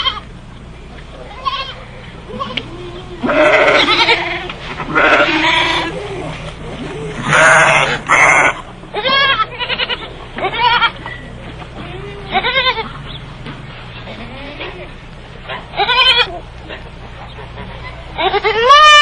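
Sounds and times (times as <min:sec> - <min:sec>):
goats or sheep bleating: 0:01.2 - 0:11.1, 0:11.8 - 0:13.0, 0:14.0 - 0:15.0, 0:15.7 - 0:16.5, 0:17.6 - 0:19.0.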